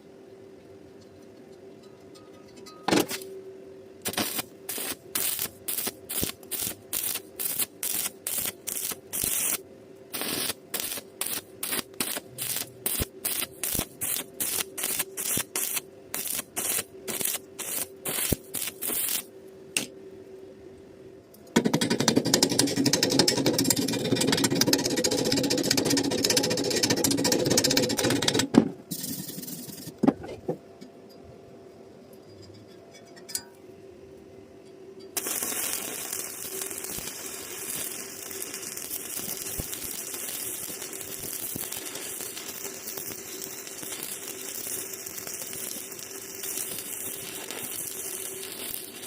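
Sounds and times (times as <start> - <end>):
continuous dense noise: 0.0 - 49.0
faint steady hum: 0.0 - 49.0
arc welding crackle: 4.0 - 19.9, 21.6 - 28.5, 35.2 - 49.0.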